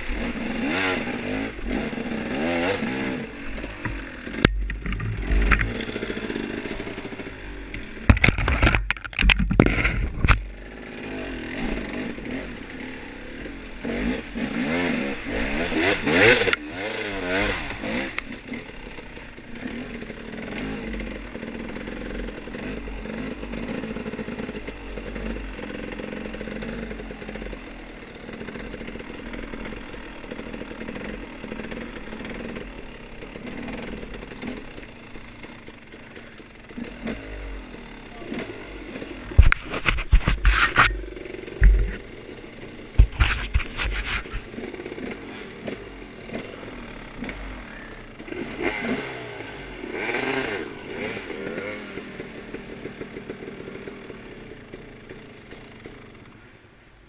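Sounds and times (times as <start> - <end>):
dirt bike engine revving: 0.0 - 56.2
loud knocks and clatter: 41.6 - 42.0.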